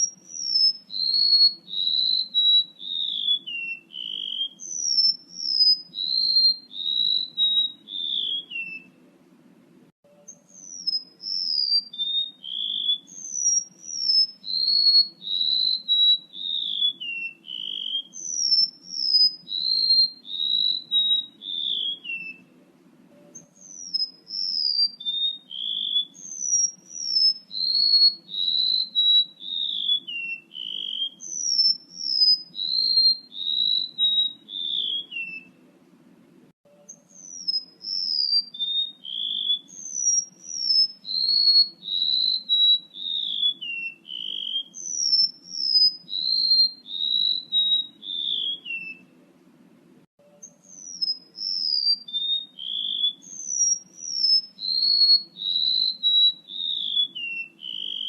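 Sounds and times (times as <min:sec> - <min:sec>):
bird whistled call: 0:00.0 - 0:09.0, 0:10.1 - 0:22.6, 0:23.2 - 0:35.6, 0:36.7 - 0:49.2, 0:50.3 - 0:58.0
faint low hum: 0:07.4 - 0:11.6, 0:20.3 - 0:24.6, 0:33.3 - 0:38.0.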